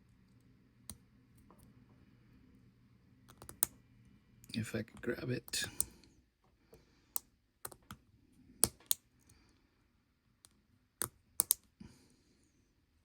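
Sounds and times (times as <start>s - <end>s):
small sharp clicks and taps: 8.6s - 9.4s, 10.4s - 11.8s.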